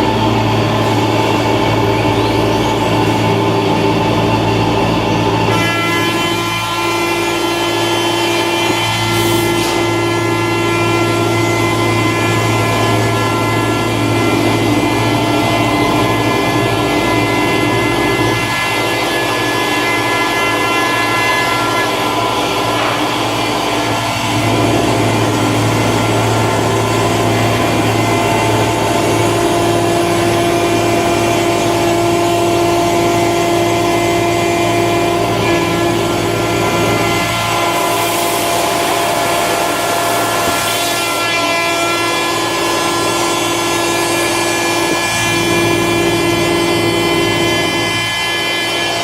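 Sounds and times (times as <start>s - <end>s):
noisy cutting sound: 0.0s - 49.0s
router machine hum: 0.0s - 49.0s.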